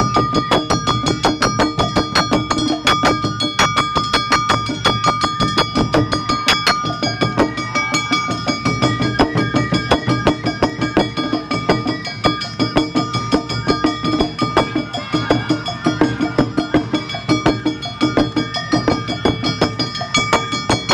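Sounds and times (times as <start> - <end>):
hand gong struck rapidly: 0.0 - 20.9
held high notes: 0.0 - 20.9
taiko drums: 0.0 - 20.9.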